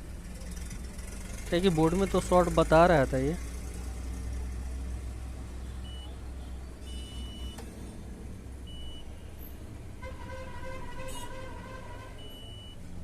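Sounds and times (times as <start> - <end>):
multimeter buzzer beeps: 6.8 - 7.6.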